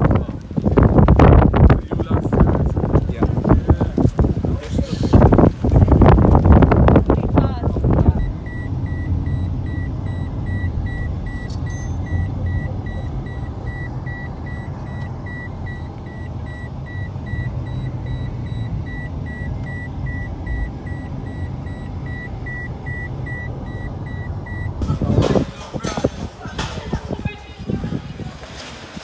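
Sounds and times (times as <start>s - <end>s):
vehicle engine rumbling: 0.0s - 29.0s
electronic warning beeper: 8.1s - 26.2s.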